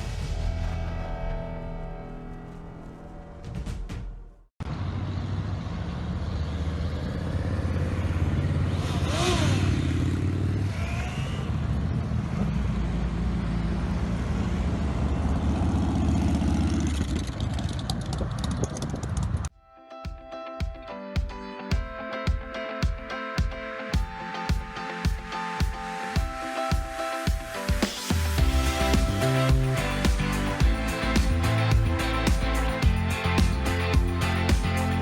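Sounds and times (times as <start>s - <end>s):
motorcycle engines running: 4.8s - 19.5s, 28.4s - 35.0s.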